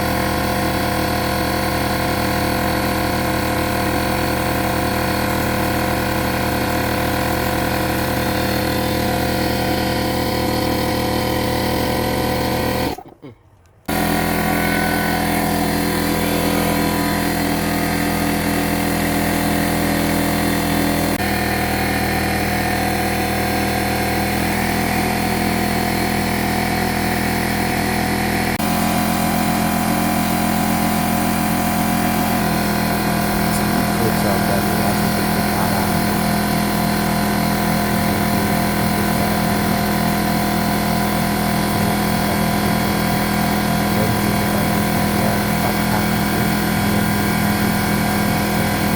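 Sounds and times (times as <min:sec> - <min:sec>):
air compressor running: 0:00.0 - 0:48.9.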